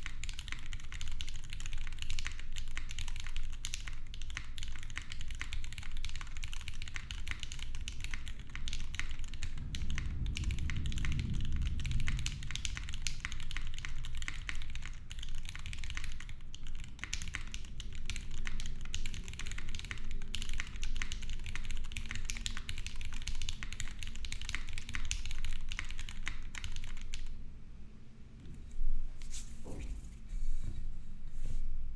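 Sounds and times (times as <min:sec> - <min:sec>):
fast typing on mechanical keyboard: 0:00.0 - 0:27.4
low thunder rumble: 0:08.4 - 0:17.0.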